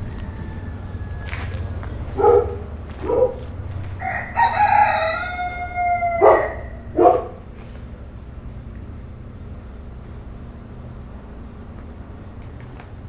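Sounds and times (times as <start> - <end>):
rooster crowing: 0.0 - 7.4
steady low hum: 0.0 - 13.0.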